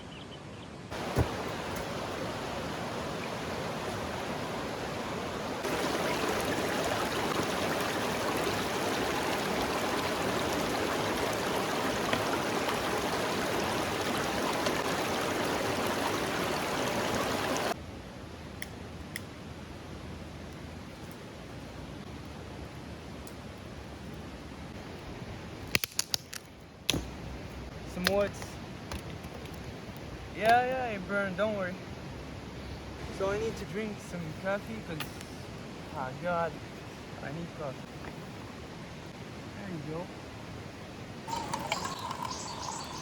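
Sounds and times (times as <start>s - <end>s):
river water flowing: 0.9s - 18.4s, 30.0s - 43.0s.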